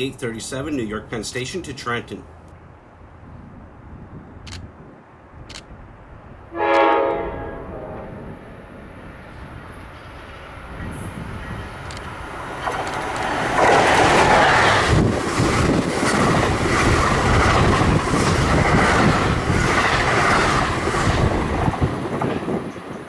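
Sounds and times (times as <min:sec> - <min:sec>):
electric train passing: 0:05.1 - 0:23.0
wheels clattering over rails: 0:11.7 - 0:23.0.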